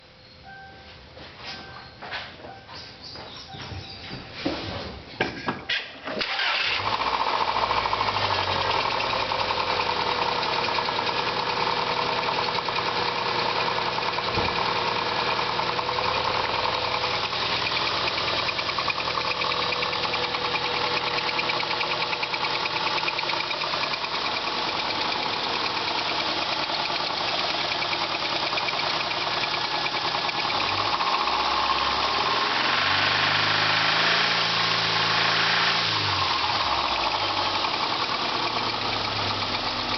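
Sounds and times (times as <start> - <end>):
car engine running: 6.2 - 39.9
engine knocking: 6.3 - 39.9.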